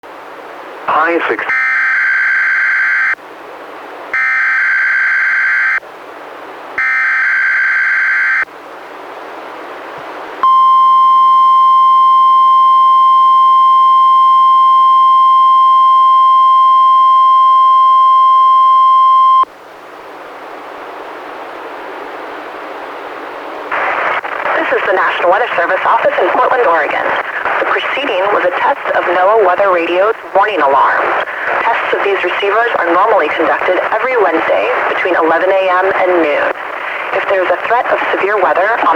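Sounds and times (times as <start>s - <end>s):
radio hiss: 0.8s - 1.6s, 23.7s - 38.9s
steady warning alarm tone: 1.5s - 3.2s, 4.2s - 5.8s, 6.8s - 8.5s, 10.4s - 19.5s.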